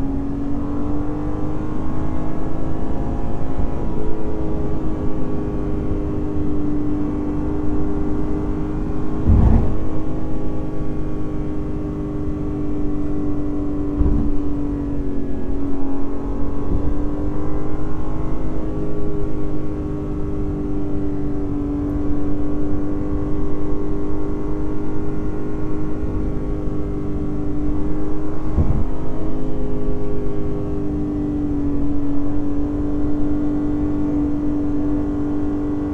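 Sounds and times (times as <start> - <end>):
car engine exhaust drone: 0.0 - 35.9
short low thumps: 9.1 - 10.2, 14.0 - 14.6, 28.5 - 29.1.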